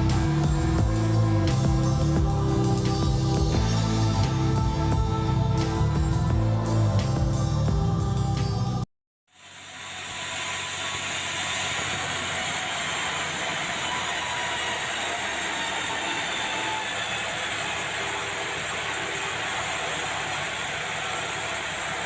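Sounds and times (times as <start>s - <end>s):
sawmill machinery running: 9.4s - 22.0s.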